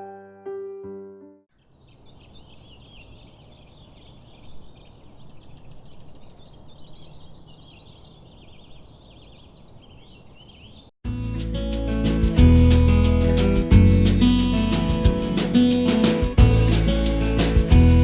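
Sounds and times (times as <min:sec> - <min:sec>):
music: 0:00.0 - 0:01.4, 0:11.1 - 0:18.0
birds chirping and twittering: 0:01.5 - 0:10.9.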